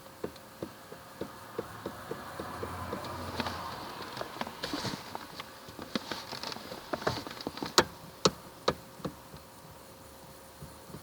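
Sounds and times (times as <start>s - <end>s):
light clicks in car steering: 0.2s - 4.6s
sharp knocks in car steering: 0.2s - 4.8s.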